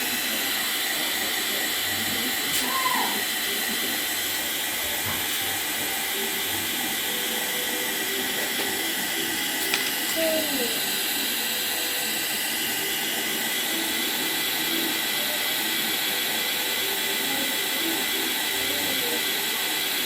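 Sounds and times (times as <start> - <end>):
tv static hiss: 0.0 - 20.0.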